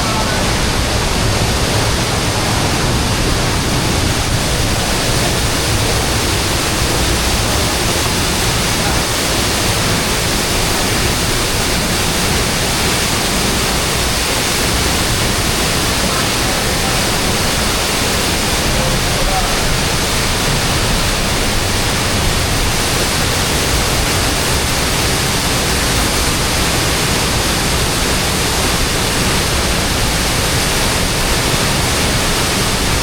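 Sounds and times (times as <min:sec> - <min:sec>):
waterfall rushing: 0:00.0 - 0:33.0.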